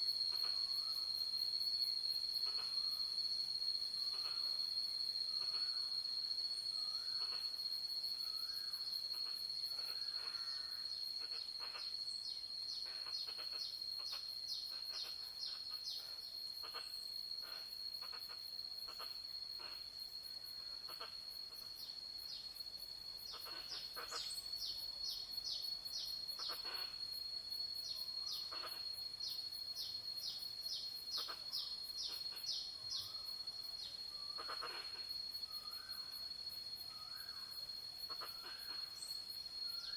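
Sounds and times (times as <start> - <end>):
high-pitched insect drone: 0.0 - 22.4.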